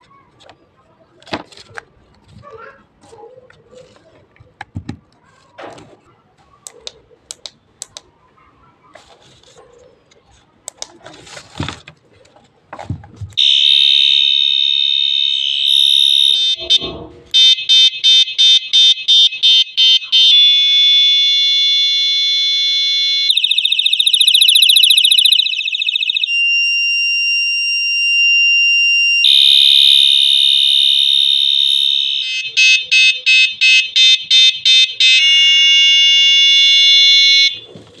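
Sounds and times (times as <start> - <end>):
electronic bicycle horn sirens: 13.4 - 37.7.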